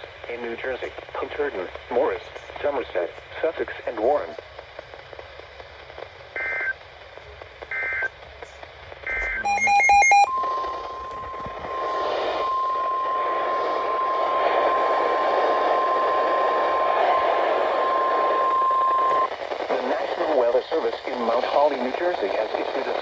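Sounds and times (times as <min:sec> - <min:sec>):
radio hiss: 0:00.0 - 0:23.0
data chirp: 0:09.1 - 0:17.3
loud electronic beeping: 0:09.1 - 0:19.3
steady warning alarm tone: 0:09.1 - 0:19.3.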